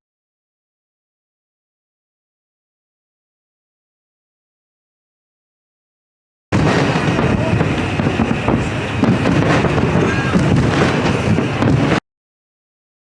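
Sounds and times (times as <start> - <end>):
hubbub of many voices: 6.6 - 12.0
wind buffeting microphone: 6.6 - 12.0.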